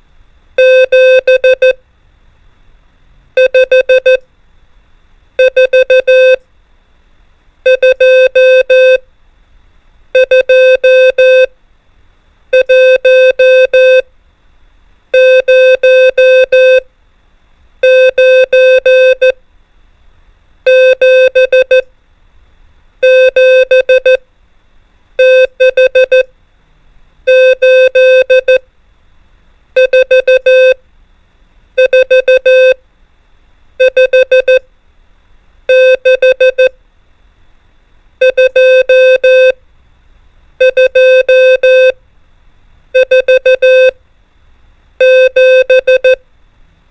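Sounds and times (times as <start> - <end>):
morse code beeps: 0.6 - 1.8, 3.4 - 4.2, 5.4 - 6.4, 7.7 - 9.0, 10.2 - 11.5, 12.6 - 14.1, 15.2 - 16.8, 17.8 - 19.4, 20.7 - 21.8, 23.0 - 24.2, 25.2 - 26.3, 27.3 - 28.6, 29.8 - 30.8, 31.8 - 32.8, 33.8 - 34.6, 35.7 - 36.7, 38.2 - 39.6, 40.6 - 42.0, 43.0 - 44.0, 45.0 - 46.2.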